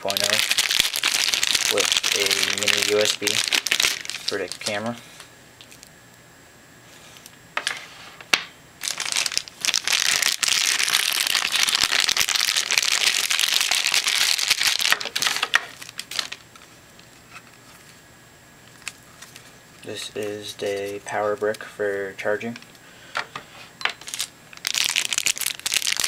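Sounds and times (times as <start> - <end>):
packaging crinkling: 0.0 - 5.9, 8.8 - 18.0, 18.6 - 21.1, 23.9 - 26.0.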